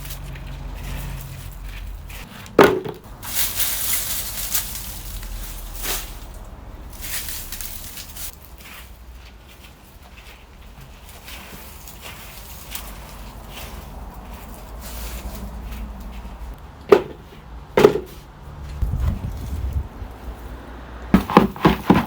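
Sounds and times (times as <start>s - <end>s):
soil and plants being dug by hand: 0.0s - 22.0s
sharp loud knock: 21.2s - 22.0s.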